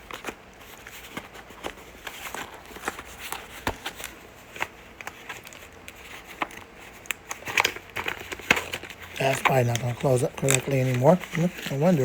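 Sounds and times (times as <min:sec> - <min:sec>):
hands handling plastic package: 0:00.0 - 0:12.0.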